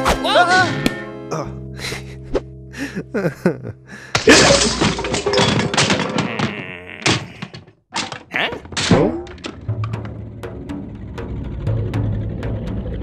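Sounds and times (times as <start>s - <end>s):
music: 0.0s - 4.4s, 8.2s - 13.0s
knocks and crashes: 4.1s - 10.2s.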